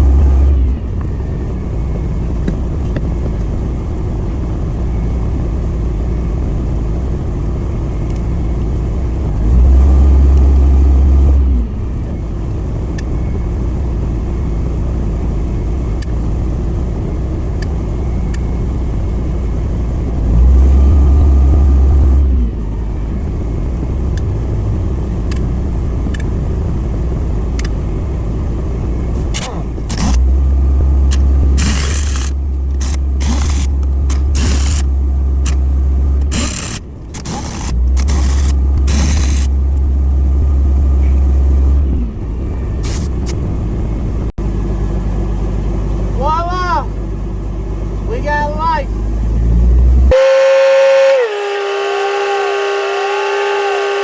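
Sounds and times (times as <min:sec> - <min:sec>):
louder low hum: 0:00.0 - 0:54.0
motor running with low rumble: 0:00.0 - 0:54.0.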